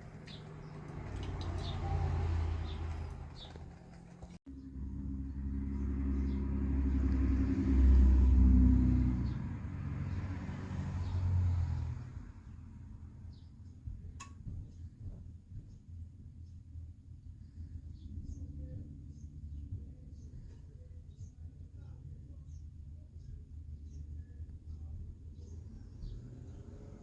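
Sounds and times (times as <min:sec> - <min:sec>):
vehicle engine passing by: 0:00.0 - 0:13.5, 0:25.4 - 0:27.0.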